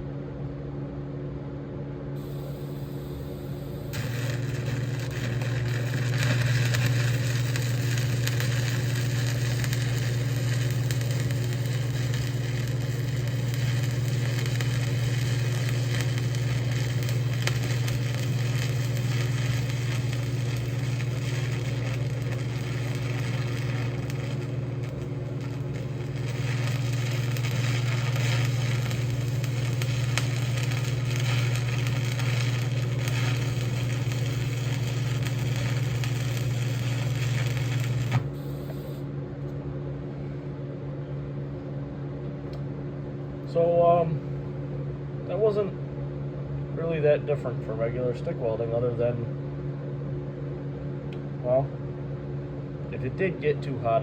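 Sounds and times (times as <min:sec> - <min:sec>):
steady low hum: 0:00.0 - 0:54.0
welding arc crackling and sizzling: 0:02.2 - 0:39.0.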